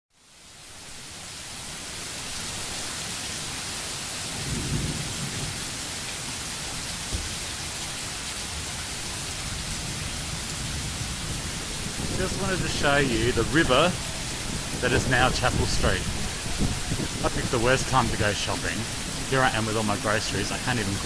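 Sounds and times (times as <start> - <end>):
heavy rain pouring: 0.2 - 21.0.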